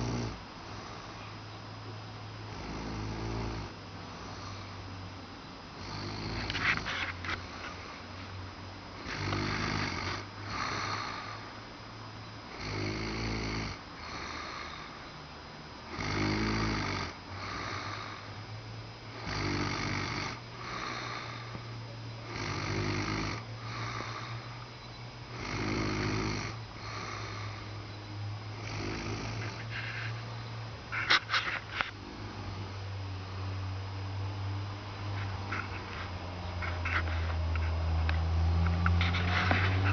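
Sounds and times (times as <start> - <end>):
person snoring loudly: 0.0 - 1.0, 2.5 - 4.7, 5.8 - 6.6, 9.0 - 11.5, 12.5 - 14.9, 15.9 - 18.3, 19.1 - 21.6, 22.2 - 24.5, 25.3 - 27.8, 28.5 - 29.7.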